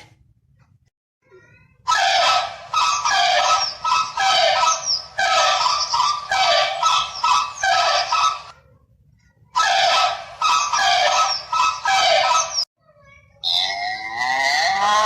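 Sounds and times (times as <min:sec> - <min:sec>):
animal calling in loud cries: 0:01.8 - 0:08.6, 0:09.5 - 0:12.7, 0:13.4 - 0:15.0.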